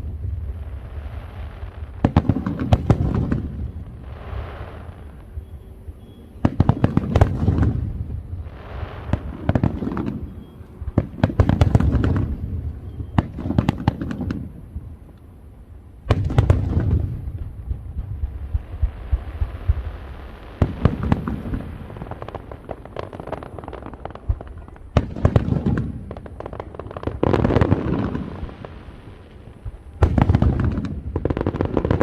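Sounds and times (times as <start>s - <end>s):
firework hissing: 0.0s - 5.4s, 6.6s - 10.3s
fireworks bangs and crackling: 0.0s - 15.2s, 15.8s - 32.0s.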